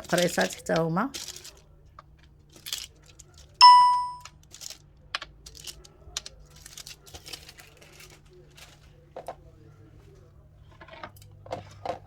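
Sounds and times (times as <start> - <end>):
loud bell-like ding: 3.6 - 4.2.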